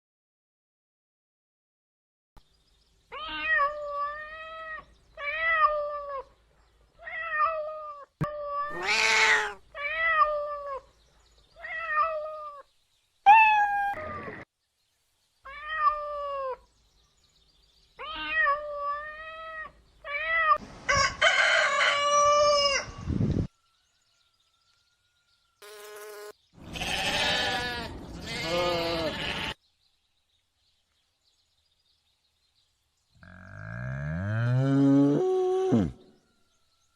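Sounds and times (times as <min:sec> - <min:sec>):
cat meowing: 0:07.0 - 0:10.8, 0:26.8 - 0:29.6
harsh cat calls: 0:07.0 - 0:10.8.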